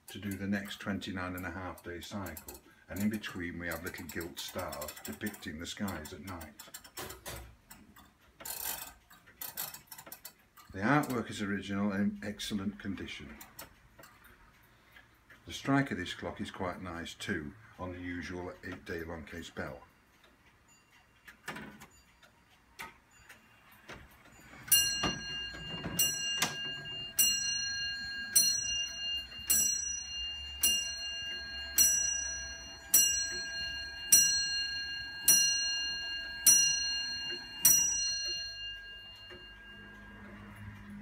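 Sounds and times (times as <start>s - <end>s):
clock ticking faintly: 0.0s - 41.0s
clock bell striking: 23.1s - 41.0s.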